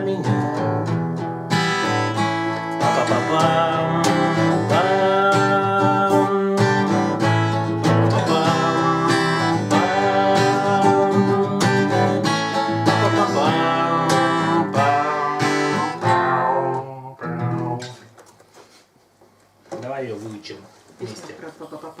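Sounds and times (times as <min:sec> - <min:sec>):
strummed acoustic guitar: 0:00.0 - 0:18.1
wordless singing: 0:02.6 - 0:07.2, 0:07.8 - 0:17.2.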